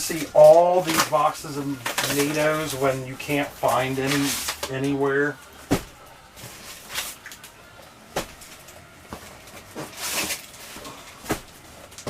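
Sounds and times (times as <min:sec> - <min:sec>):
cardboard scraping rustle: 0:00.1 - 0:07.2, 0:08.2 - 0:12.0
cardboard boxes knocking: 0:05.6 - 0:06.0.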